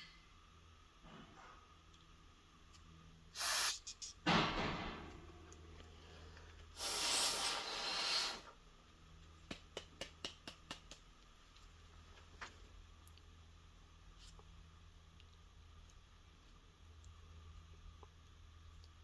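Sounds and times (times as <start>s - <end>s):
aerosol spray hissing: 3.4s - 4.2s, 6.8s - 8.5s.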